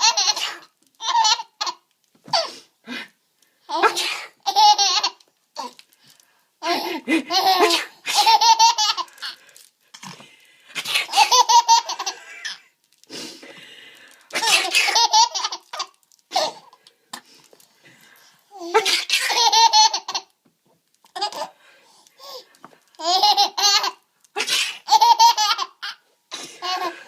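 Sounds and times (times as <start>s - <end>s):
baby laughing: 0.0s - 1.8s, 3.7s - 5.8s, 6.6s - 9.4s, 11.0s - 12.6s, 14.4s - 16.7s, 18.6s - 20.3s, 21.1s - 21.6s, 23.0s - 26.0s, 26.6s - 27.0s.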